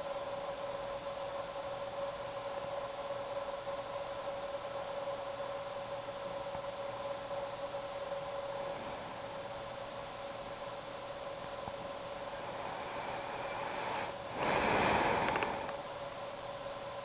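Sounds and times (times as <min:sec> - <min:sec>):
background hum and hiss: 0:00.0 - 0:17.0
constant mid-pitched tone: 0:00.0 - 0:17.0.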